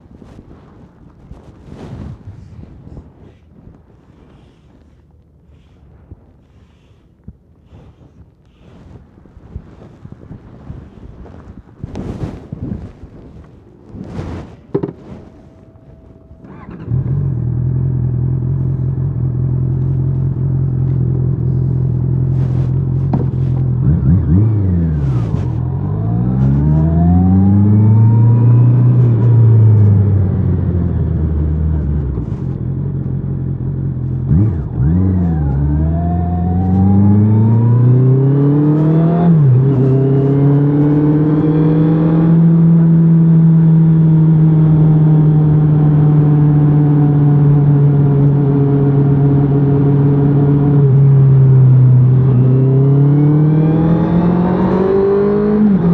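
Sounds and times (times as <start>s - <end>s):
motorcycle engine revving: 14.0s - 55.9s.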